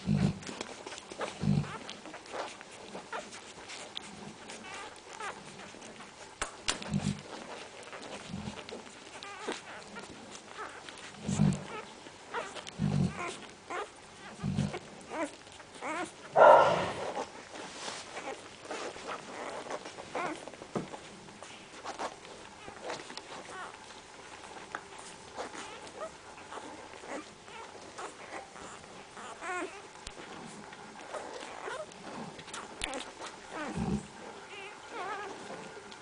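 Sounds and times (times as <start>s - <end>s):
puppies vocalising: 0.0s - 36.0s
puppy crying: 0.4s - 6.3s, 7.2s - 20.6s, 22.0s - 36.0s.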